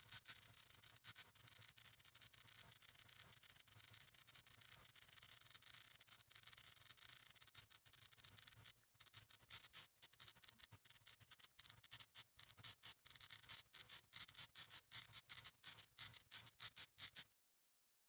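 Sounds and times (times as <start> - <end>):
pencil scratching on paper: 11.1 - 17.4.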